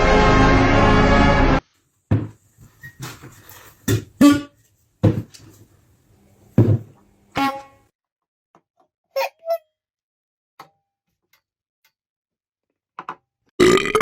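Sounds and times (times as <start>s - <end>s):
music: 0.0s - 1.7s.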